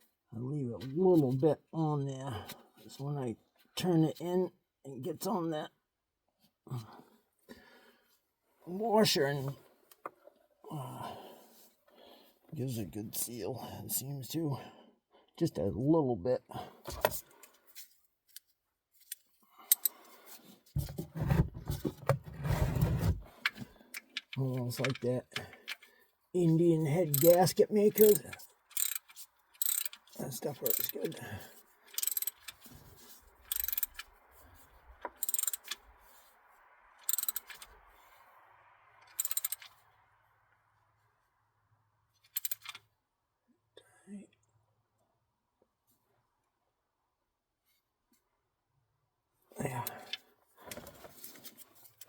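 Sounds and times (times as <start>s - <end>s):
metallic clicks and scrapes: 16.9s - 26.0s, 27.1s - 36.3s, 37.0s - 38.2s, 39.0s - 39.8s, 42.2s - 42.9s
ratchet wrench clicking: 19.1s - 19.9s, 27.1s - 27.4s, 28.0s - 31.0s, 31.9s - 32.6s, 33.5s - 34.1s, 35.2s - 35.7s, 37.0s - 37.7s, 39.1s - 39.7s, 42.3s - 42.8s.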